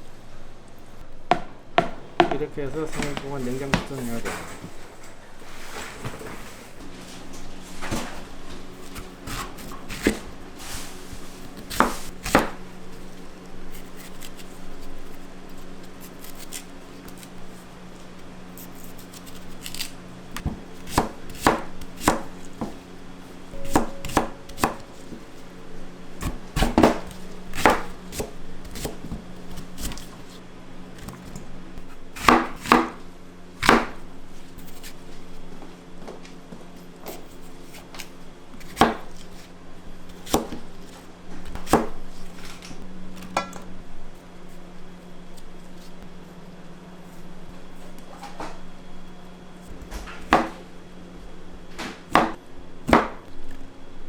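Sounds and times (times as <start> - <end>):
steady low hum: 0.0 - 54.0
knife chopping on cutting board: 1.3 - 2.4, 8.8 - 10.3, 11.5 - 12.7, 19.2 - 22.8, 23.6 - 25.2, 26.2 - 30.0, 32.2 - 33.0, 33.6 - 34.0, 38.6 - 39.2, 40.1 - 40.7, 41.5 - 42.0, 50.2 - 50.6, 51.8 - 53.2.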